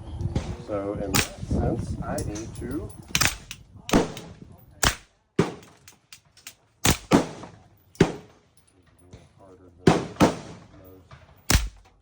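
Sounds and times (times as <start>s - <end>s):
sharp cracks: 1.2s - 1.5s, 3.1s - 8.3s, 11.5s - 12.0s.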